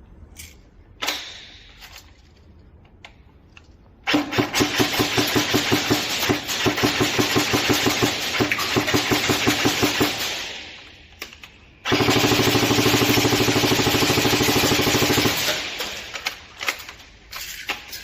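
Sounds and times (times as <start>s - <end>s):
airsoft gun full-auto burst: 4.1s - 10.7s, 11.9s - 16.2s.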